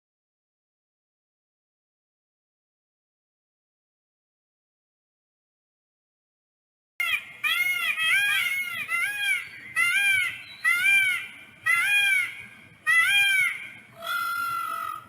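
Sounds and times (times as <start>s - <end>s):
peacock calling: 7.0s - 15.0s.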